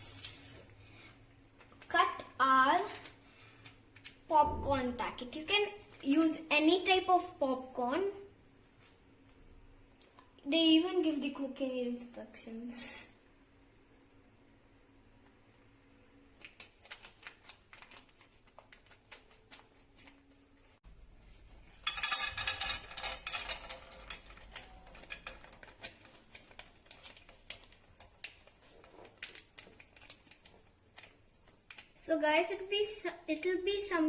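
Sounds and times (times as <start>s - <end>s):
popcorn popping in a pan: 21.9s - 30.4s.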